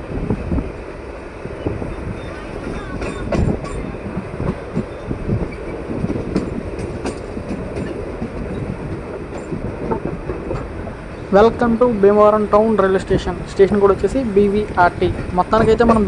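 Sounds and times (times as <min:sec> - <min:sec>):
train rumbling on track: 0:00.0 - 0:16.0
wheels clicking and clanking: 0:01.6 - 0:11.3.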